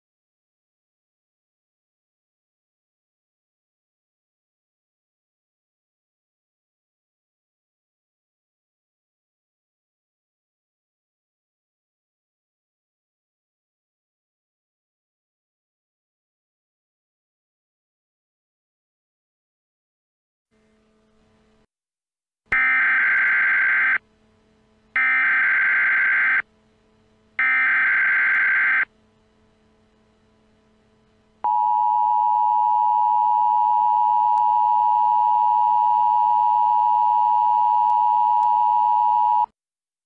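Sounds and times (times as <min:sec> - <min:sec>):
screeching data bursts: 0:22.6 - 0:24.0, 0:25.0 - 0:26.4, 0:27.4 - 0:28.9.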